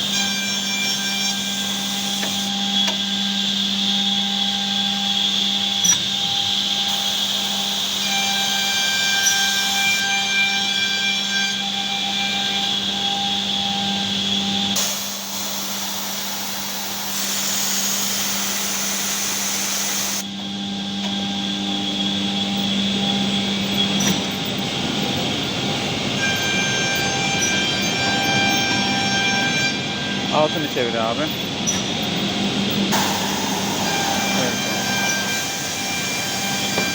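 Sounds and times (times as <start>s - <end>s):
machine hum: 12.6s - 36.9s.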